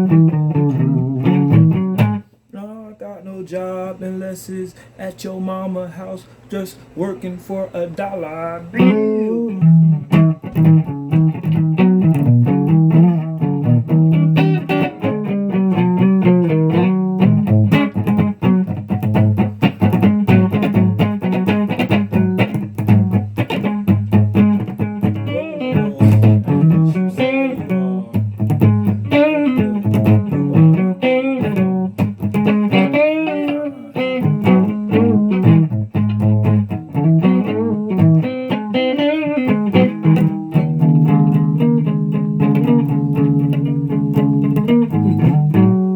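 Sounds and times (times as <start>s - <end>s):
plucked guitar notes: 0.0s - 2.2s, 8.8s - 45.9s.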